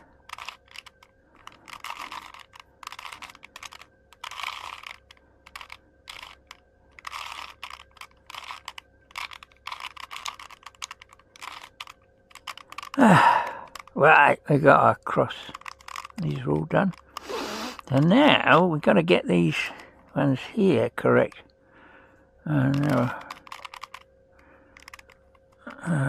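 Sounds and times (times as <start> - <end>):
puzzle cube clicking: 0.3 - 14.0, 15.4 - 18.6, 22.6 - 24.0, 24.7 - 25.6.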